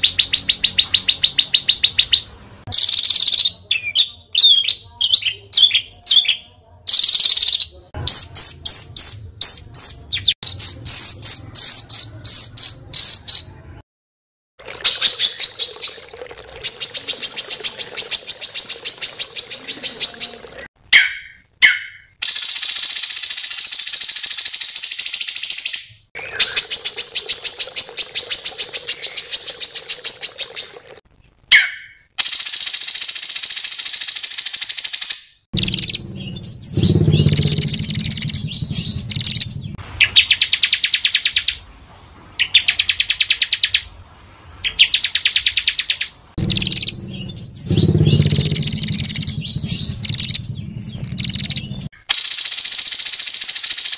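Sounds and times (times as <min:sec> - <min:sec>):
songbirds trilling and chattering: 0:15.0 - 0:21.1, 0:26.2 - 0:31.7, 0:35.6 - 0:41.5, 0:44.6 - 0:52.1.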